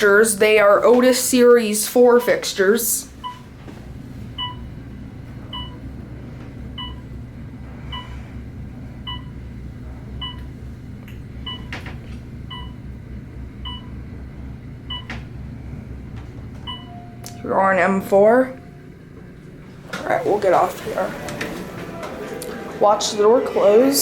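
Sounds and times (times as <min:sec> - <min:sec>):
elevator low hum: 0:00.0 - 0:24.0
elevator short beeps: 0:02.1 - 0:02.6, 0:03.2 - 0:03.5, 0:04.4 - 0:04.7, 0:05.4 - 0:05.8, 0:06.8 - 0:07.1, 0:07.9 - 0:08.2, 0:09.0 - 0:09.4, 0:10.2 - 0:10.5, 0:11.4 - 0:11.8, 0:12.5 - 0:12.8, 0:13.6 - 0:14.0, 0:14.9 - 0:15.2, 0:16.6 - 0:19.0.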